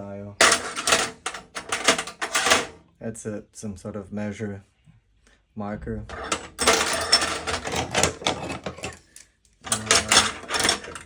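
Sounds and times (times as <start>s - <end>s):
metal tools rattling in toolbox: 0.4s - 2.7s, 6.1s - 11.0s.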